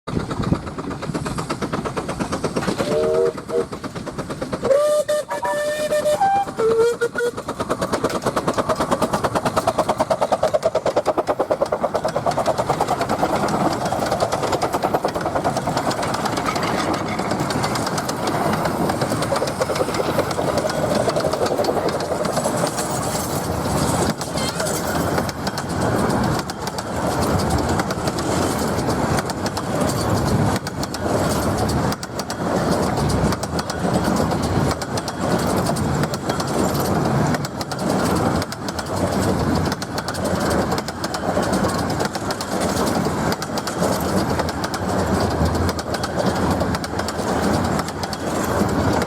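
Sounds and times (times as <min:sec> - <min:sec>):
train running past: 0:00.1 - 0:49.0
locomotive whistles: 0:02.8 - 0:03.7, 0:04.6 - 0:07.5.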